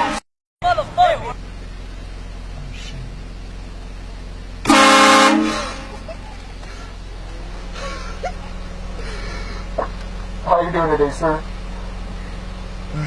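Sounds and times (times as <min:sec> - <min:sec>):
train horn blast: 0:04.6 - 0:06.0.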